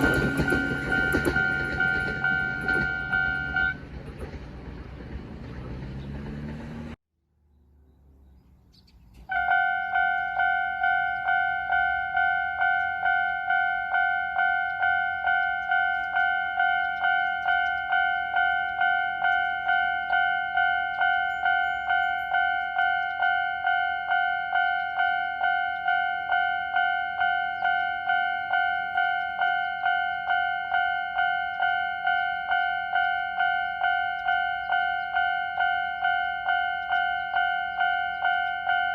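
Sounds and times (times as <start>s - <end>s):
level crossing alarm ringing: 0.0s - 3.8s, 9.3s - 38.9s
train passing: 0.0s - 7.0s, 9.3s - 38.9s.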